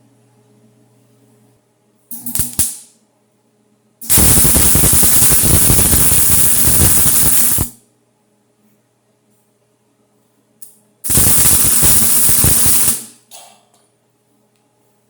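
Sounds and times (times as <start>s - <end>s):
welding arc crackling: 4.0s - 7.8s, 11.1s - 13.2s.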